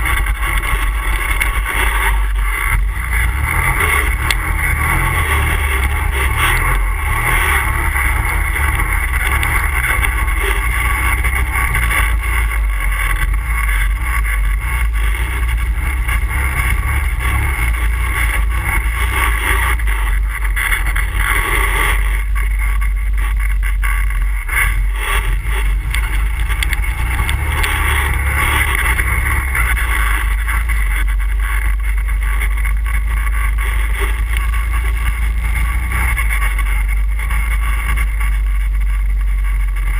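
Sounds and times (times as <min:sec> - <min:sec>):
quad bike engine running: 0:00.0 - 0:39.9.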